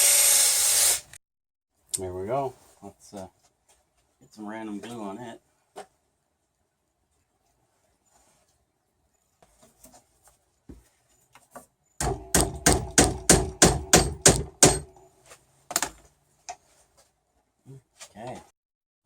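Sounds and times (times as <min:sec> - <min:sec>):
hammer striking wooden dowel: 0:12.0 - 0:15.0.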